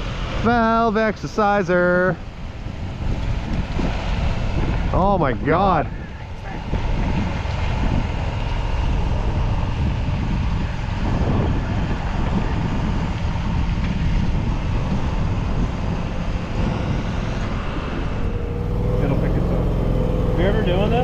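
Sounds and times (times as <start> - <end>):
truck engine rumbling: 0.0 - 21.0.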